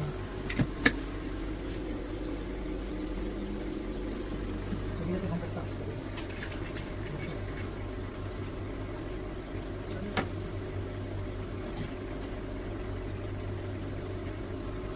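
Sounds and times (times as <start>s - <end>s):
machine humming: 0.0s - 14.9s.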